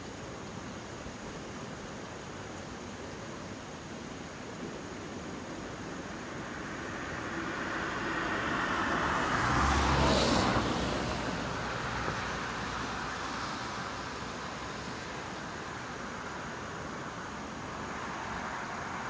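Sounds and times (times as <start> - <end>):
creek water rushing: 0.0 - 19.0
vehicle passing by: 6.7 - 13.7.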